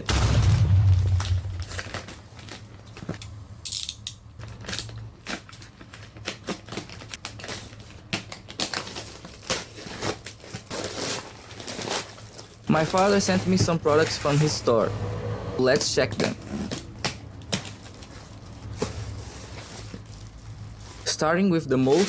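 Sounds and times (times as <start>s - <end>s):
low rumble: 0.0s - 2.2s
packaging being handled: 4.4s - 14.6s
plastic and cardboard crinkles: 4.4s - 14.7s, 16.1s - 22.0s.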